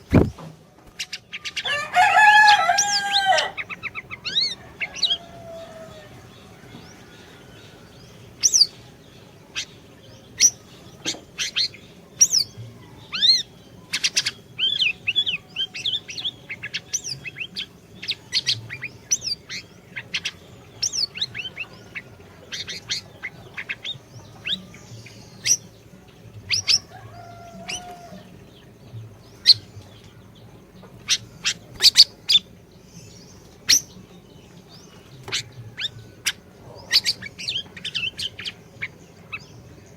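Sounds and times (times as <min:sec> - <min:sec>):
songbird chirping and whistling: 0:00.0 - 0:39.9.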